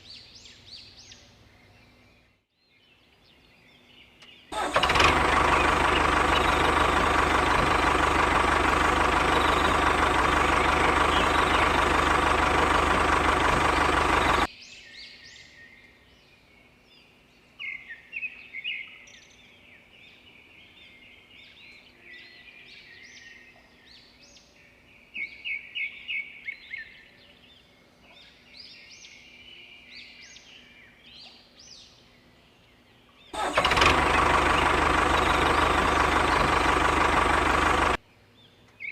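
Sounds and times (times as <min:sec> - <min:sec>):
birds chirping: 0:00.0 - 0:16.6, 0:17.4 - 0:38.9
loud steady motor running: 0:04.6 - 0:14.5, 0:33.4 - 0:38.0.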